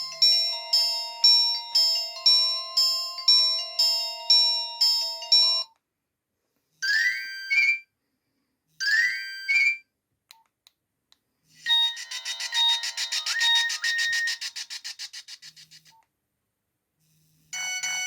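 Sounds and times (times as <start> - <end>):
phone ringtone melody: 0.0 - 5.7, 11.6 - 15.6, 17.6 - 18.0
pulsing electronic melody: 11.7 - 15.8
quickly rising electronic notes: 11.7 - 15.9.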